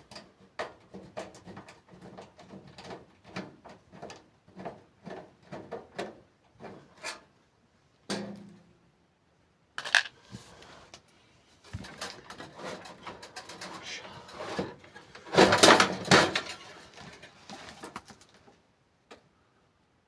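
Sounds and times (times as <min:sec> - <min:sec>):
clicks and knocks of hard parts: 0:09.8 - 0:10.1, 0:14.5 - 0:18.4.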